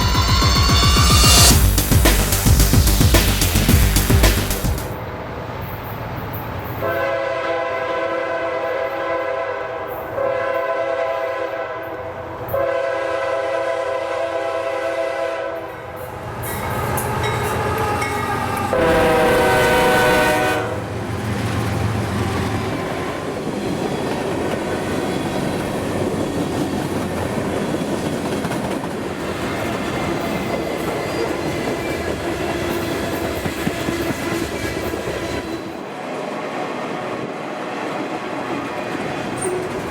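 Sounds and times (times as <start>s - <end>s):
locomotive air horn blasts: 6.8s - 11.9s, 12.5s - 15.8s, 17.5s - 21.0s
train cars rumbling and clattering: 15.8s - 39.9s.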